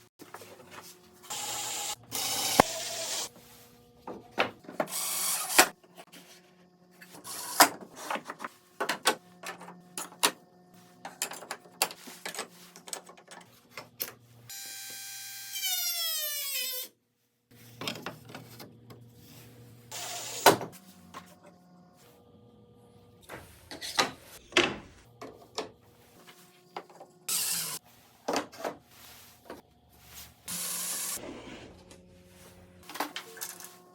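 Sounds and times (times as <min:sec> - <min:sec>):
small power tool motor whine: 0:01.2 - 0:03.3, 0:04.9 - 0:05.7, 0:14.5 - 0:16.9, 0:19.9 - 0:20.6, 0:27.3 - 0:27.8, 0:30.5 - 0:31.2.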